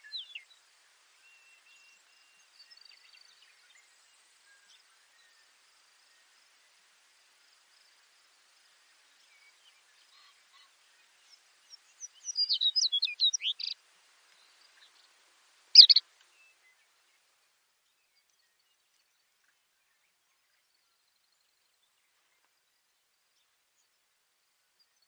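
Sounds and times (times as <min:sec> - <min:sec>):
faint high bird chirps: 0:00.0 - 0:06.3, 0:09.2 - 0:15.1, 0:15.7 - 0:17.2
sparrow singing: 0:11.7 - 0:13.8, 0:15.8 - 0:16.0.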